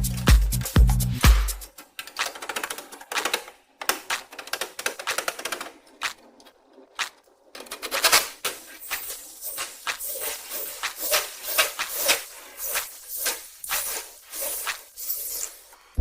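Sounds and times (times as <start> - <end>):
music with heavy beat: 0.0 - 1.8
rapid mechanical clicking and rattling: 1.6 - 14.9.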